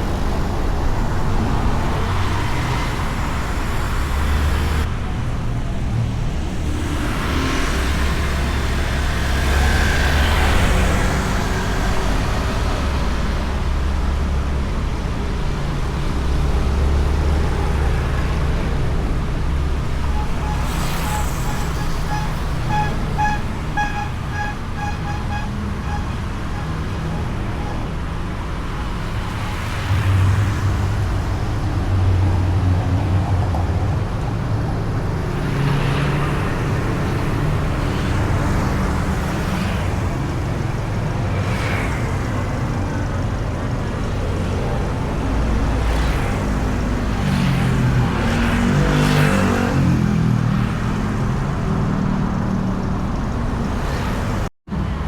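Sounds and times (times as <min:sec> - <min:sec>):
passing traffic: 0:00.0 - 0:55.0
wind and road noise: 0:00.0 - 0:55.0.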